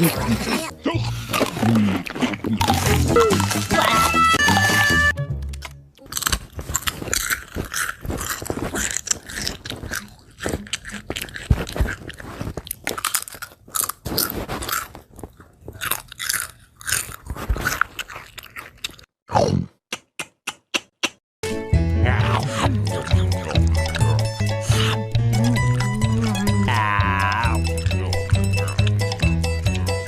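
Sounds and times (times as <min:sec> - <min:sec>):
crunching crisp food: 0:01.2 - 0:05.0, 0:06.0 - 0:19.1.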